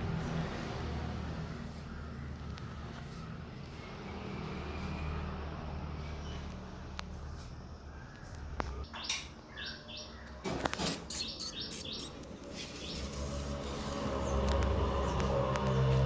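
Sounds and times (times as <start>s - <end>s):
short high chirping calls: 10.8s - 13.3s.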